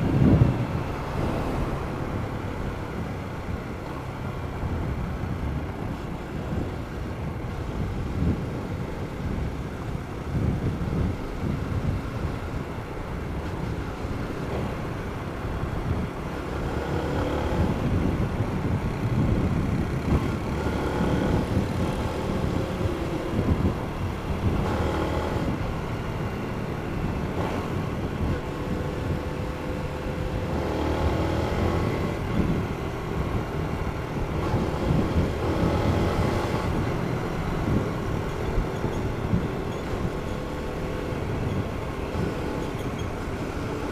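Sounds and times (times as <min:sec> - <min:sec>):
motorcycle engine revving: 0:16.4 - 0:43.9.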